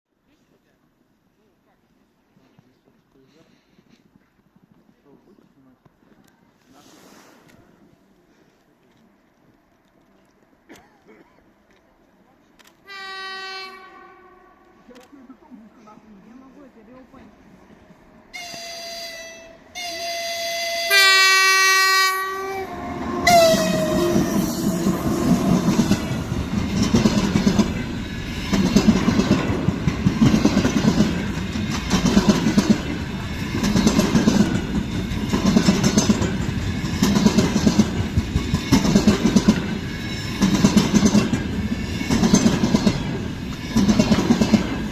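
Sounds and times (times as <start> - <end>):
locomotive horn blasts: 12.9 - 14.8, 18.3 - 25.6
train wheels clattering over rail joints: 23.0 - 44.9.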